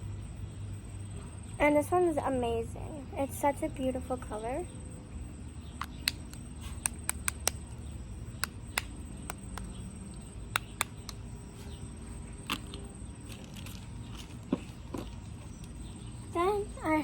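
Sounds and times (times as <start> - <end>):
plastic tubes and caps clicking: 5.8 - 7.6.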